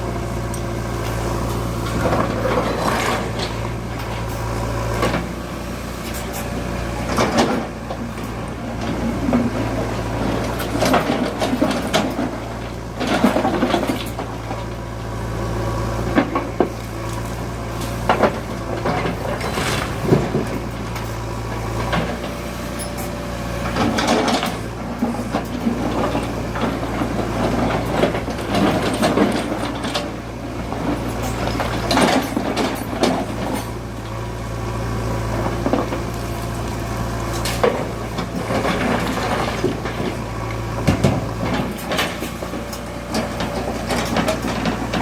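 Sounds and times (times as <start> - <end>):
diesel engine running under load: 0.0 - 45.0
bucket knocks and clatter: 40.8 - 42.2.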